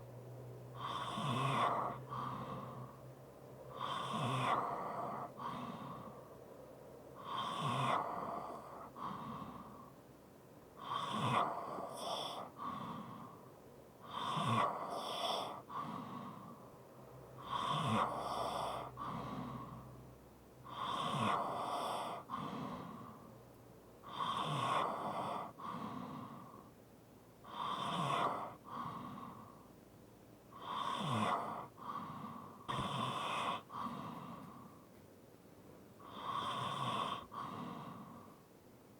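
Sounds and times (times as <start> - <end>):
person snoring heavily: 0.8 - 3.0, 3.7 - 6.1, 7.2 - 9.8, 10.8 - 13.3, 14.0 - 16.6, 17.4 - 19.8, 20.7 - 23.2, 24.0 - 26.7, 27.4 - 29.6, 30.6 - 34.8, 36.0 - 38.4.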